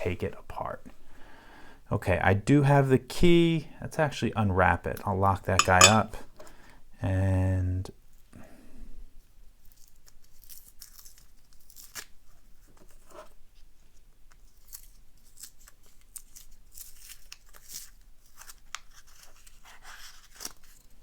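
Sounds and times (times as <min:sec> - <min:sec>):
wrapping crinkling and tearing: 0:09.6 - 0:13.0, 0:13.9 - 0:21.0.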